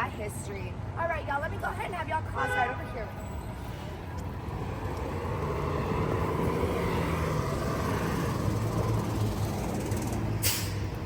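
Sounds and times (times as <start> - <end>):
vehicle engine humming: 2.9 - 11.0
short hiss: 10.4 - 10.8.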